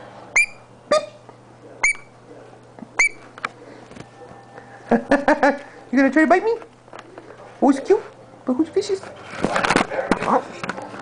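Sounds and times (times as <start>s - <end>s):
lovebird chirping: 0.4s - 1.1s.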